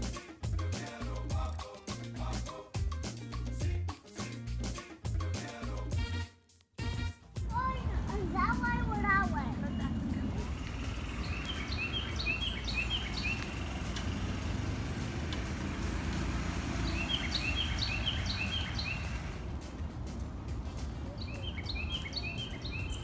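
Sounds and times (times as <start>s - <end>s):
low background rumble: 7.4s - 23.0s
bird chirping: 7.8s - 14.6s, 15.4s - 23.0s.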